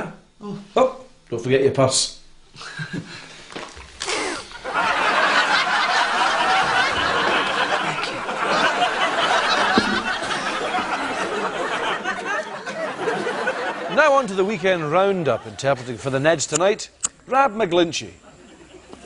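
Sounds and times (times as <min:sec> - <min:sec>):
audience laughing: 0:04.2 - 0:16.2, 0:18.2 - 0:19.0.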